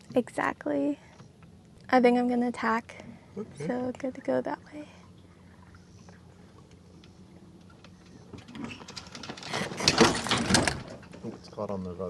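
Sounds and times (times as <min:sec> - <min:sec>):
sail flapping and rattling: 0:07.6 - 0:11.5.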